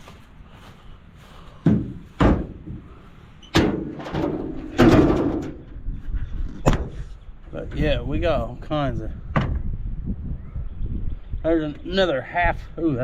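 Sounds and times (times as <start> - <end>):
vehicle door knocks and thuds: 1.6 - 2.9, 9.3 - 9.7.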